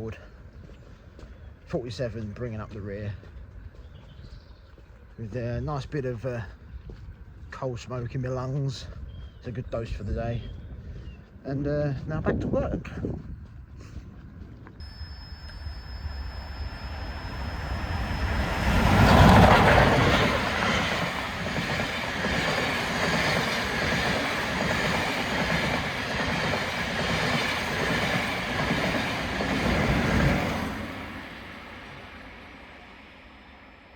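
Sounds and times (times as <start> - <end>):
train rumbling past: 14.8 - 33.9.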